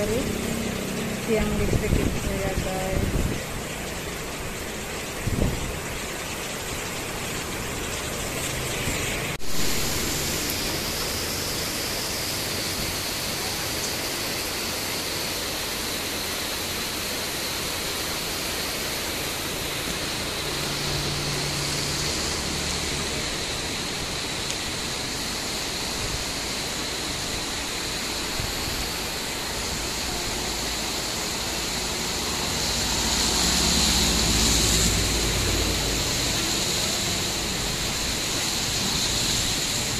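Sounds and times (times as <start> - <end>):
heavy rain: 0.0 - 39.9
strong wind: 1.3 - 3.7, 5.1 - 6.1, 23.1 - 39.9.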